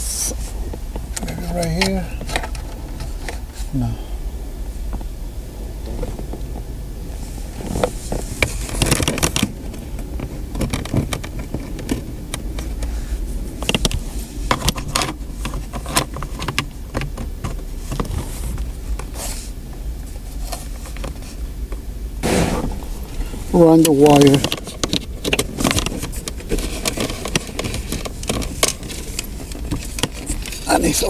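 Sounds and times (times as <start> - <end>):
low steady hum: 0.0 - 31.0.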